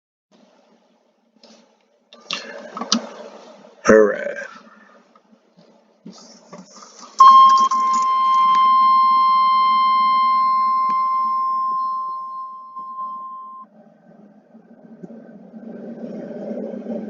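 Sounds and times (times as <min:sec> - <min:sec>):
electronic warning tone: 0:07.2 - 0:13.6.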